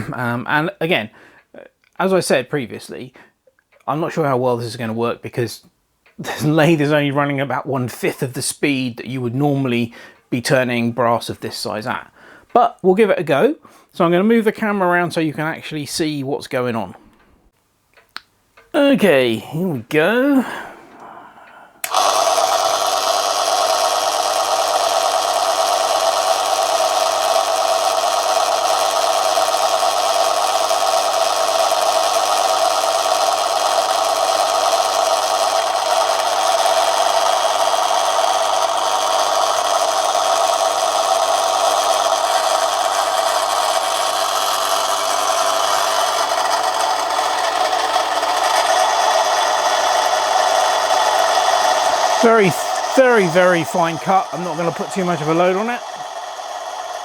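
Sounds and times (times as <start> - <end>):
lathe motor whirring: 20.0 - 57.0.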